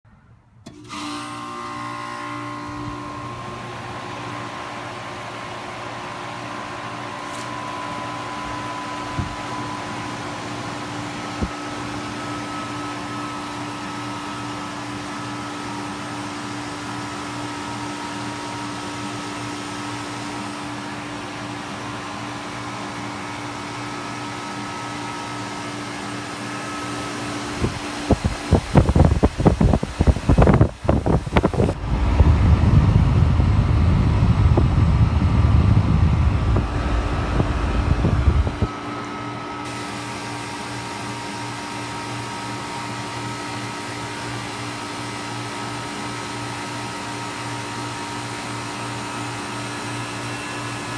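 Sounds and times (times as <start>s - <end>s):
blower fan humming: 0.1s - 50.9s
low rumbling bursts: 30.4s - 38.7s.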